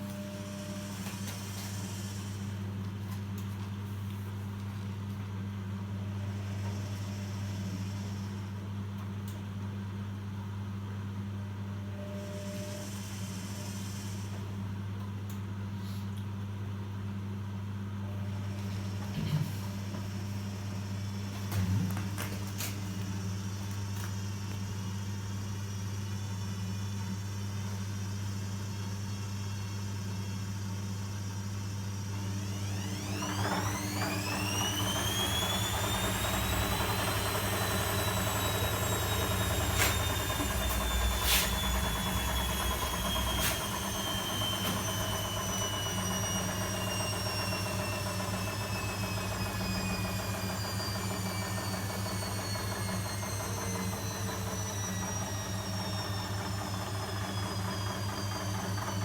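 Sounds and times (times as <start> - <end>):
washing machine running: 0.0 - 15.7, 16.5 - 59.0
washing machine motor whine: 0.0 - 59.0.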